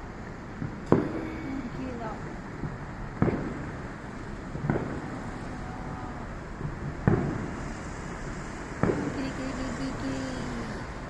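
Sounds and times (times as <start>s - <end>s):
steady background noise: 0.0s - 11.0s
firework shells booming: 0.6s - 5.6s, 6.3s - 7.8s, 8.7s - 9.5s.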